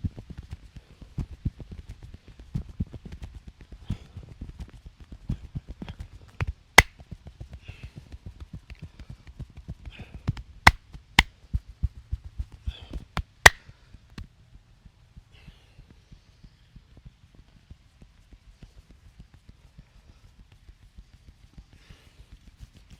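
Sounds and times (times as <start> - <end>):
hands tapping and chopping: 13.2 - 13.6.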